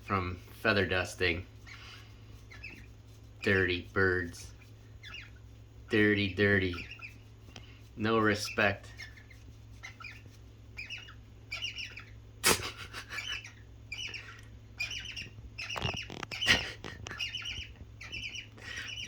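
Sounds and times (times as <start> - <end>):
high squeaky bird chirps: 0.8 - 19.0.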